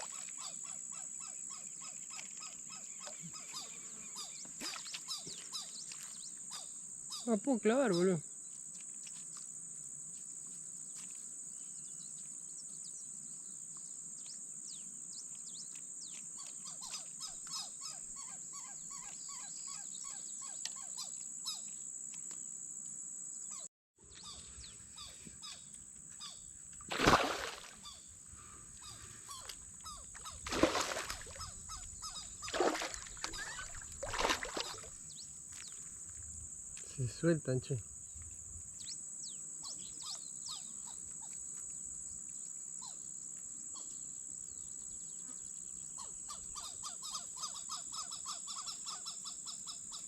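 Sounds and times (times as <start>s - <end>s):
insects droning: 0.0s - 50.0s
bird chirps: 23.5s - 26.5s, 28.8s - 35.8s, 38.8s - 41.3s.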